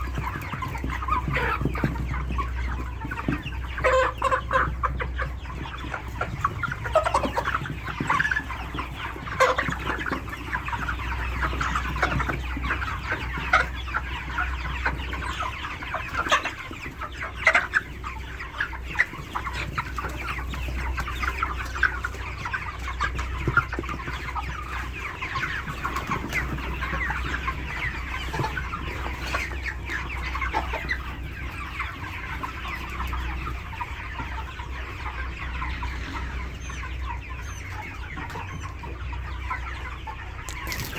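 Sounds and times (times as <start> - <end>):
chickens clucking: 0.0 - 40.9.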